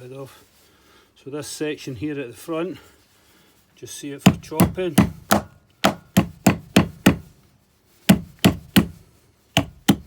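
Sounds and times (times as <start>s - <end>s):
knife chopping into wood: 4.3s - 7.3s, 8.1s - 9.0s, 9.6s - 10.0s.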